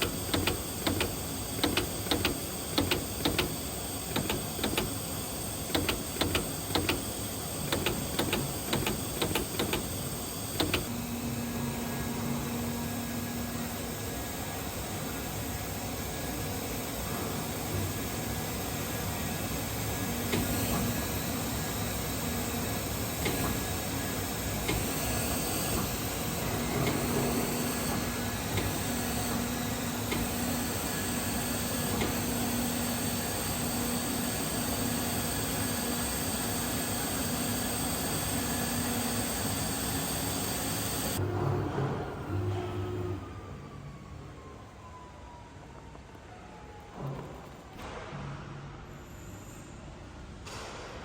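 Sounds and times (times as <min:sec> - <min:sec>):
machine hiss: 0:00.0 - 0:10.9, 0:18.3 - 0:41.2.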